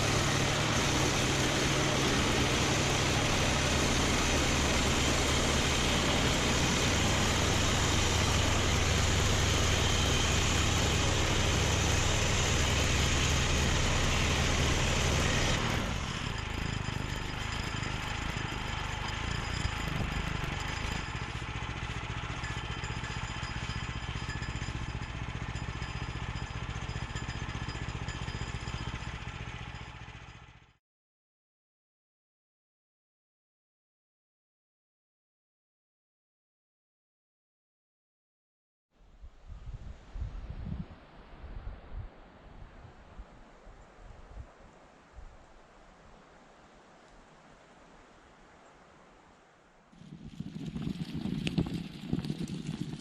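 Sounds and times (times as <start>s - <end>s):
engine running: 0.0s - 30.8s, 50.0s - 53.0s.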